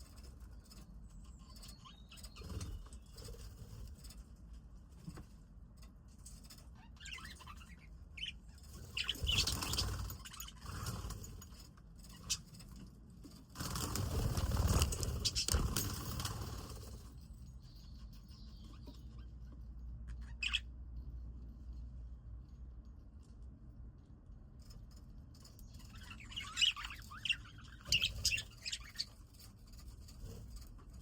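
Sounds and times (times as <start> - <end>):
wings fluttering: 6.2 - 17.3, 25.4 - 31.0
budgies chirping: 6.8 - 11.1, 17.6 - 20.7, 25.7 - 29.4.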